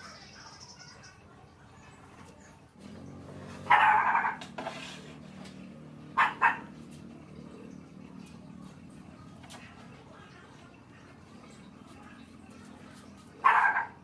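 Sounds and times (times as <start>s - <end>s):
dog barking: 3.6s - 4.4s, 6.1s - 6.8s, 13.4s - 14.0s
low steady hum: 4.4s - 13.5s.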